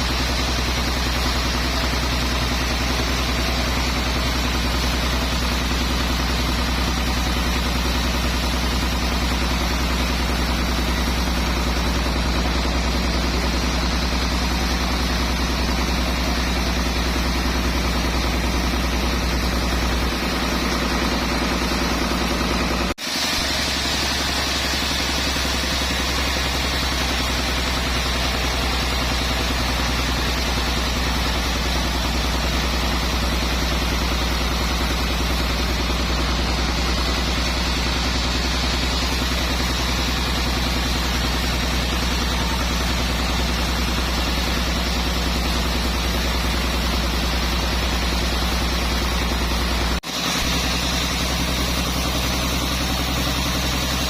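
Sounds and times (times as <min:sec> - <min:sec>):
sawmill machinery humming: 0:00.0 - 0:54.0.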